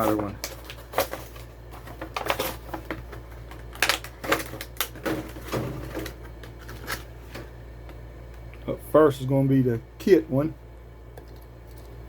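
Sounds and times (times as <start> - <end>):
plastic packaging tearing: 3.5 - 7.1.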